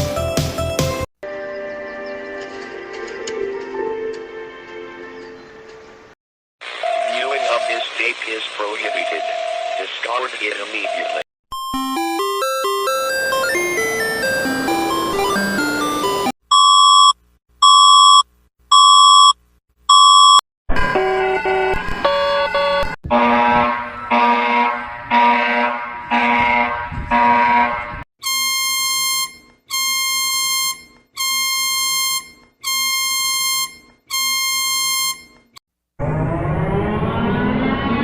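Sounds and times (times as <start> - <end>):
short electronic alarm beeps: 14.9 - 20.4, 28.2 - 35.6
buzzer pulses: 28.2 - 35.5
long harsh beeps: 28.2 - 35.5.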